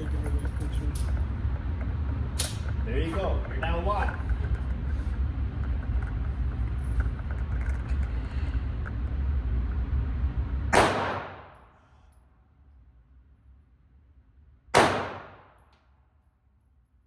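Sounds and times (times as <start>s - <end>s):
steady low rumble: 0.0s - 15.6s
pistol shot: 10.7s - 11.6s, 14.7s - 15.6s.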